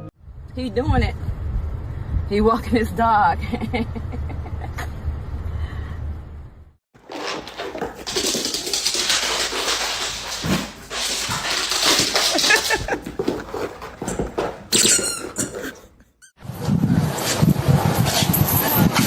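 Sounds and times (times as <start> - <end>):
rustling and scuffling: 7.0 - 16.3.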